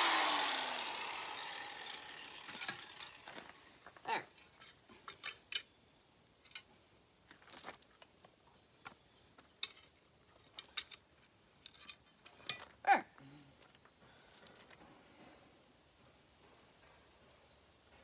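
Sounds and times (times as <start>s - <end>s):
metal parts clinking: 1.8s - 3.6s, 4.4s - 5.7s, 9.6s - 12.7s.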